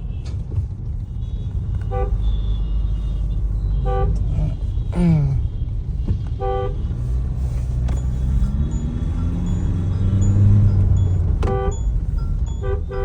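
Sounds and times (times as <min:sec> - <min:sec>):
engine and road rumble: 0:00.0 - 0:13.0
vehicle horns honking: 0:01.1 - 0:07.3, 0:11.4 - 0:11.9, 0:12.5 - 0:13.0.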